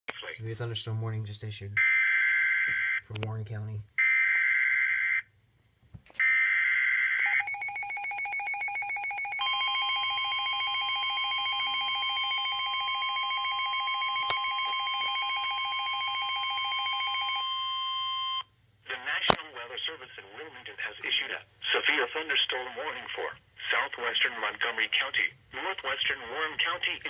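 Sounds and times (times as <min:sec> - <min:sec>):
long steady alert tone: 0:07.2 - 0:18.4.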